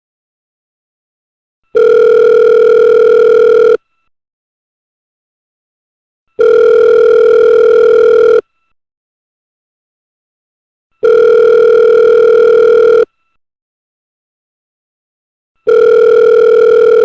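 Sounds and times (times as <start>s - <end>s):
telephone calling tone beep: 1.7s - 3.8s, 6.4s - 8.4s, 11.0s - 13.1s, 15.6s - 17.0s.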